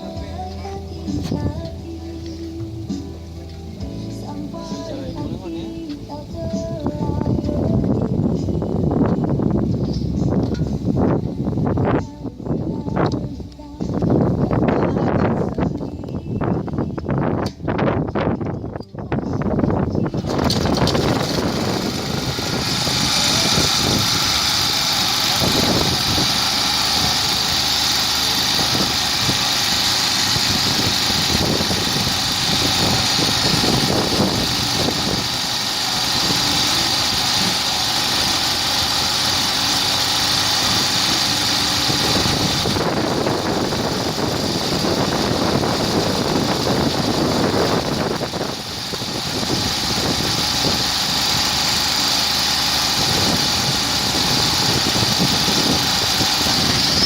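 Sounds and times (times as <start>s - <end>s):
core drill motor whining: 20.1s - 57.0s
rough low drilling noise: 20.1s - 57.0s.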